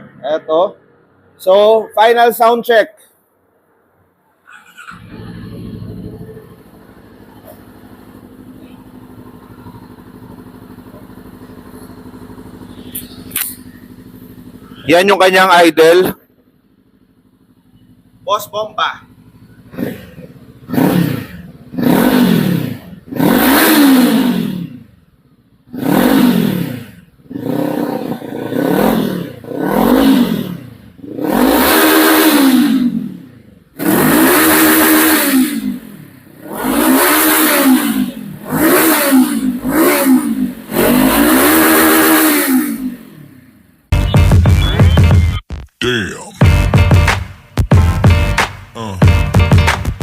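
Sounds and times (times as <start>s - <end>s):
motorcycle engine revving: 4.5s - 45.4s.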